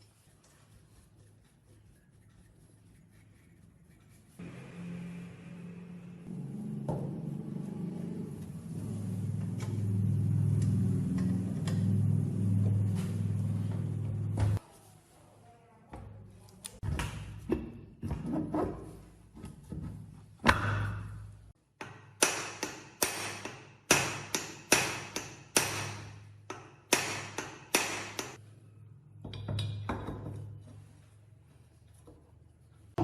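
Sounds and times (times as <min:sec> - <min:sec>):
hammer striking metal: 0:21.8 - 0:28.4.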